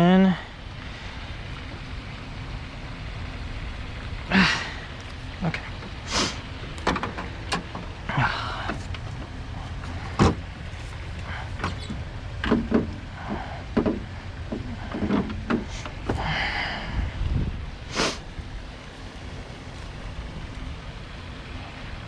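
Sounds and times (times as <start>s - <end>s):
metal clicks and knocks: 6.8s - 7.9s, 11.6s - 16.2s.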